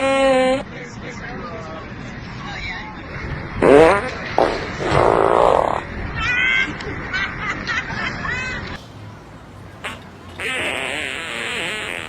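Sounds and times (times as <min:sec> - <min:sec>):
fart sounds: 0:00.0 - 0:00.6, 0:03.6 - 0:05.9, 0:09.8 - 0:12.0.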